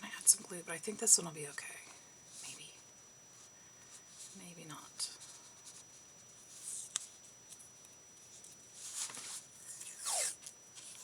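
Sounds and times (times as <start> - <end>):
paper rustling: 8.3 - 10.0.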